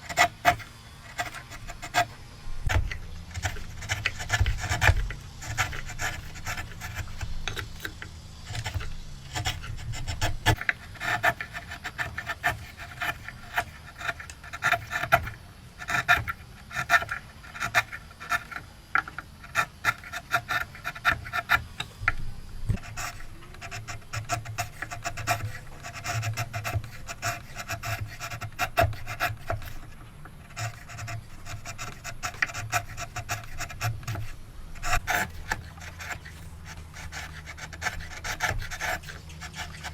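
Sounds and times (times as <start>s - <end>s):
low hum: 0.0s - 10.9s, 21.7s - 23.6s
hand tool rasping wood: 0.0s - 39.9s.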